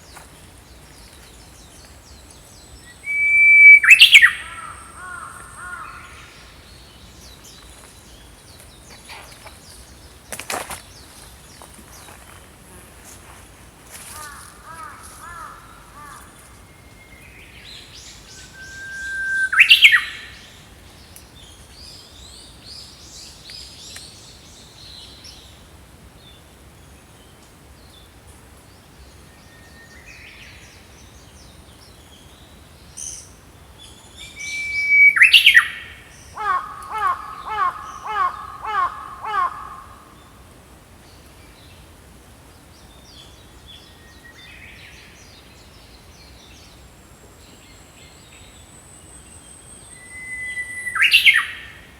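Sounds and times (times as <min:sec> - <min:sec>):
songbirds singing and calling: 0:00.0 - 0:12.4, 0:14.0 - 0:25.6, 0:26.2 - 0:51.9
birds twittering: 0:02.6 - 0:06.4, 0:18.0 - 0:20.4, 0:34.0 - 0:40.5, 0:49.0 - 0:51.8.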